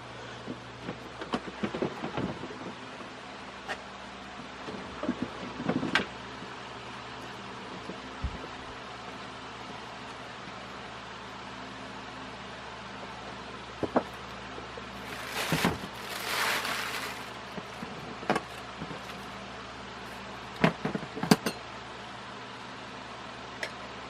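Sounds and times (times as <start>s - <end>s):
steady low hum: 0.0s - 24.0s
scraping rustle: 15.0s - 19.4s.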